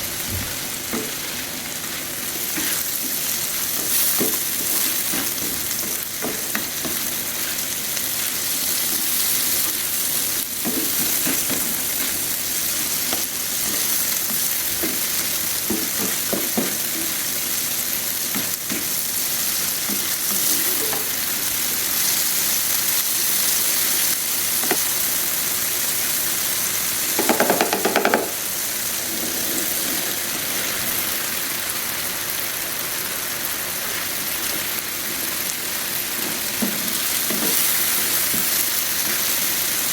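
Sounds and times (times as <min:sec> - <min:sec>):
okra sizzling in oil: 0:00.0 - 0:39.9
spatula scraping pan: 0:27.2 - 0:30.9.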